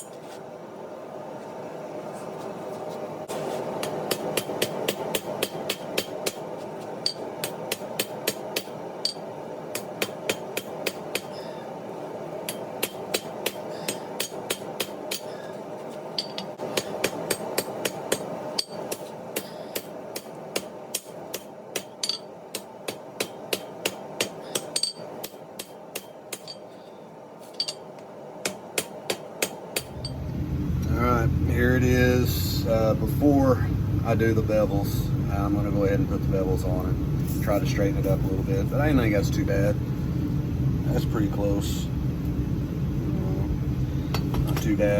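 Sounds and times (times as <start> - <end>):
hammer striking steel on anvil: 3.8 - 11.4, 12.5 - 15.4, 16.2 - 26.7.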